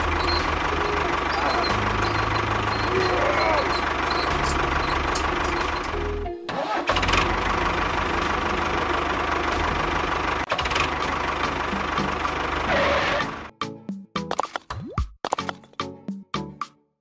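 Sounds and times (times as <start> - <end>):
small engine running: 0.0 - 6.0.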